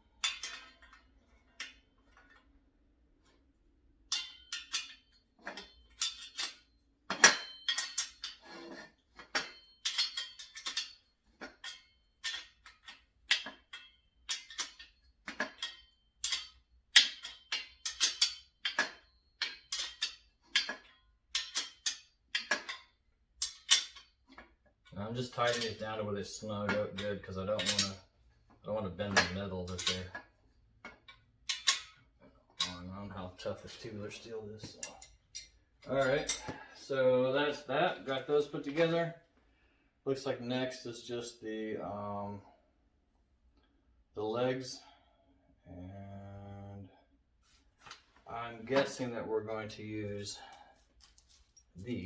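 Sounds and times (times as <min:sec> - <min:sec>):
wrenches clinking on metal: 0:00.1 - 0:02.6, 0:04.1 - 0:39.1, 0:48.6 - 0:49.2, 0:49.8 - 0:52.0.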